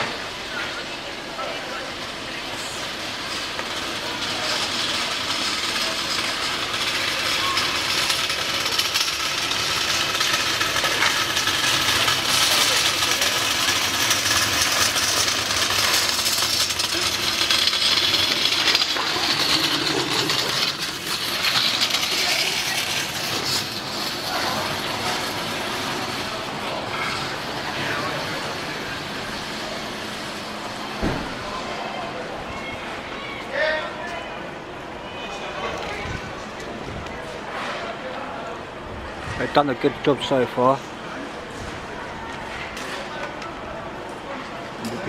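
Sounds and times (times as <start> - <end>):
large crowd chattering: 0.0 - 45.0.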